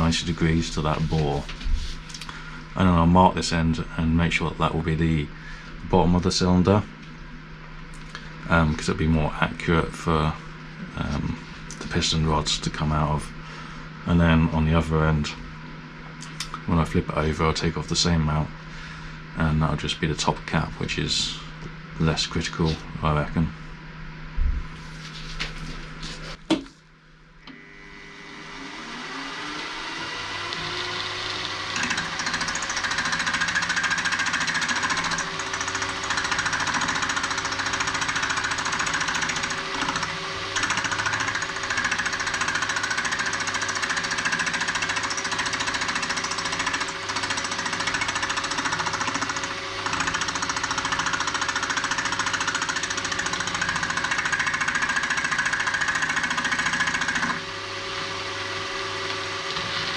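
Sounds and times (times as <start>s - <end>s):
milling machine spindle whine: 27.4s - 59.9s
metal cutting noise: 27.5s - 59.9s.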